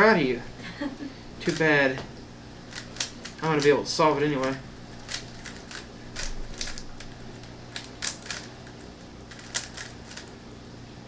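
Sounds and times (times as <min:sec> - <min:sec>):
puzzle cube plastic clicks: 0:04.4 - 0:10.3.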